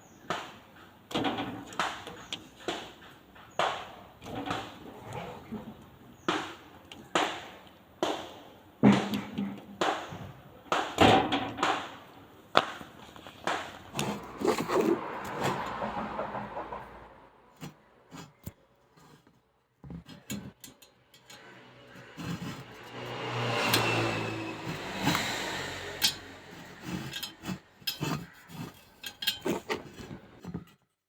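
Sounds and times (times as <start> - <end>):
sharp knocks and clatters: 13.9 - 30.8.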